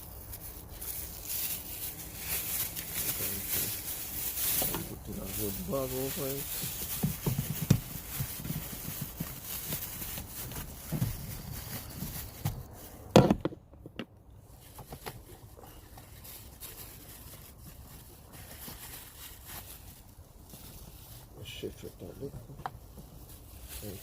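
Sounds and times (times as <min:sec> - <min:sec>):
bag rustling: 0:00.0 - 0:13.1.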